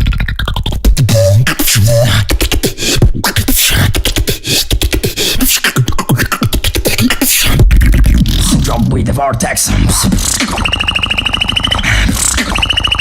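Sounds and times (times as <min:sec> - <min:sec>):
beatboxing: 0:00.0 - 0:13.0.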